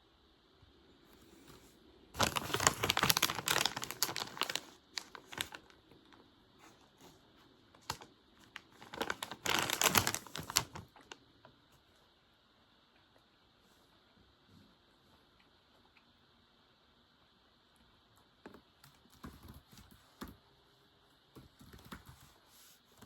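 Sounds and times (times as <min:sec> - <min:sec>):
typing on a keyboard: 0:18.8 - 0:20.4, 0:21.4 - 0:22.2.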